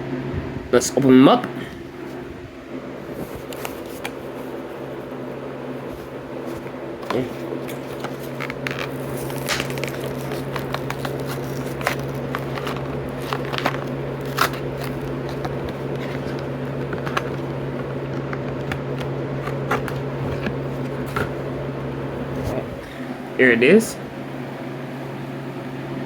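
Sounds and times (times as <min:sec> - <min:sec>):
steady low hum: 0:00.0 - 0:26.0
plastic packaging torn open: 0:07.1 - 0:21.4.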